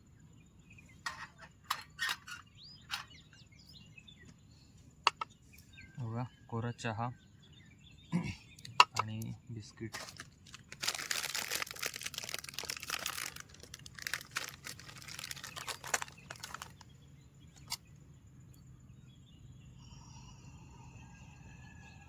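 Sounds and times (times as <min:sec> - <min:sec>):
birds calling: 0:00.0 - 0:22.0
plastic wrapper crinkling: 0:10.0 - 0:16.9.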